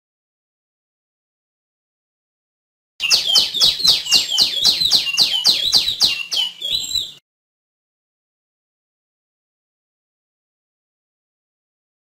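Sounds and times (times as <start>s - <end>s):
songbird calling: 3.0s - 7.2s.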